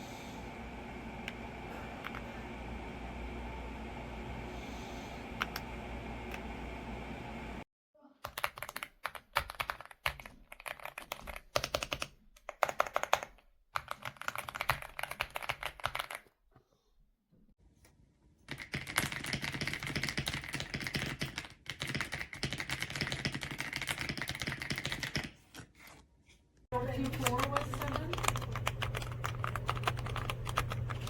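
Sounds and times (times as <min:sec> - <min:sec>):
mechanical keyboard typing: 0:08.2 - 0:16.2, 0:18.5 - 0:25.4, 0:26.8 - 0:31.0.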